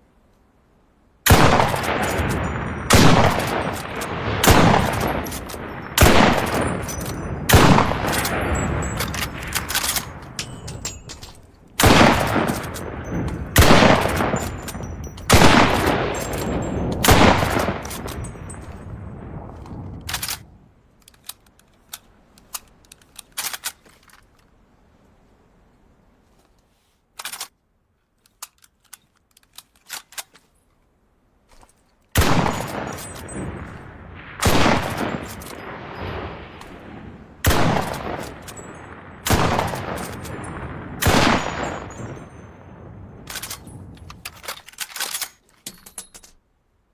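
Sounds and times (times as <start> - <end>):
rifle shots echoing: 1.3 - 20.4, 32.2 - 45.1
rifle bolt clicks: 6.9 - 15.4, 19.6 - 24.5, 27.2 - 27.6, 28.2 - 30.5, 43.3 - 46.4.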